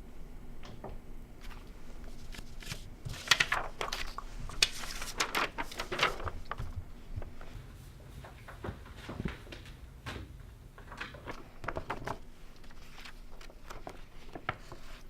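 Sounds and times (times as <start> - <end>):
faint steady hum: 0.0 - 15.0
rustling and scraping handling noises: 1.4 - 9.6.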